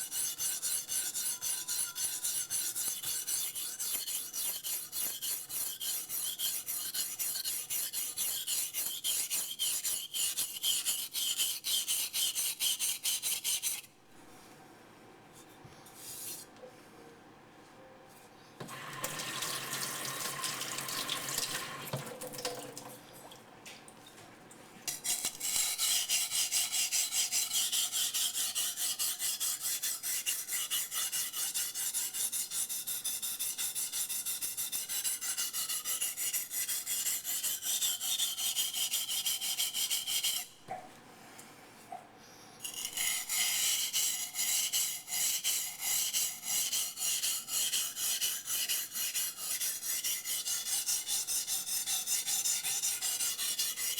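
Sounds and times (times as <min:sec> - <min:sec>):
knife scraping on sharpening stone: 0:00.0 - 0:13.9, 0:24.9 - 0:40.5, 0:42.6 - 0:53.9.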